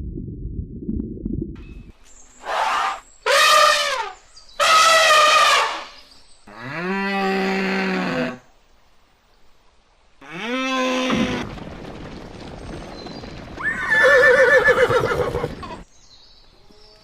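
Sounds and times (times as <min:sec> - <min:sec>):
animal calls: 0:02.4 - 0:06.0.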